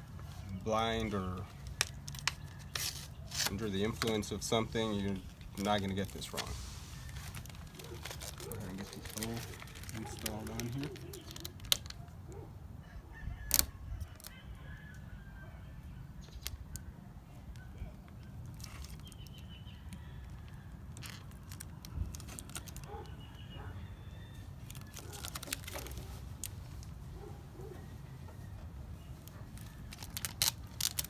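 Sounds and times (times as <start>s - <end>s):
plastic letter peeled from backing: 0.2s - 12.0s, 21.0s - 23.1s, 24.5s - 27.1s, 28.4s - 31.0s.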